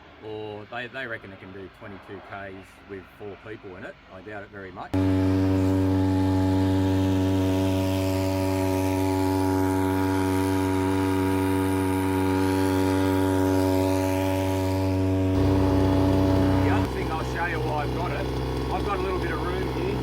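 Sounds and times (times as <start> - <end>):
deeper rumble: 5.0 - 20.0
two-stroke outboard motor running: 5.0 - 20.0.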